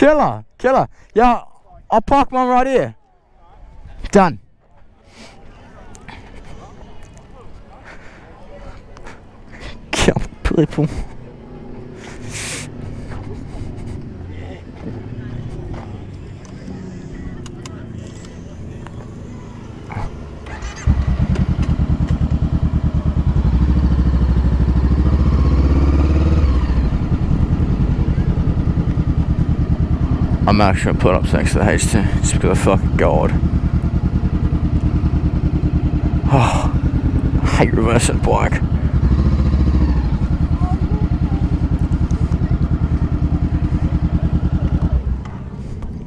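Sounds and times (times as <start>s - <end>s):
motorcycle engine running: 18.4s - 45.6s.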